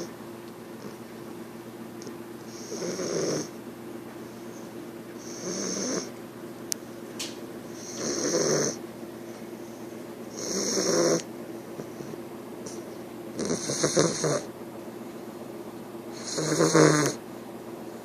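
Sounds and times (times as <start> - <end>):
puppy snoring: 0.8 - 1.1, 2.4 - 3.6, 4.4 - 6.2, 7.7 - 8.8, 10.3 - 14.5, 16.1 - 17.2.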